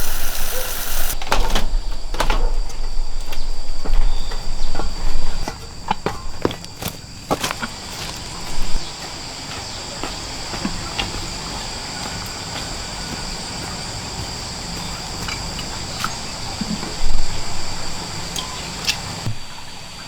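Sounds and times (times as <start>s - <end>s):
high insect drone: 0.0s - 20.0s
footsteps on forest floor: 3.3s - 16.2s.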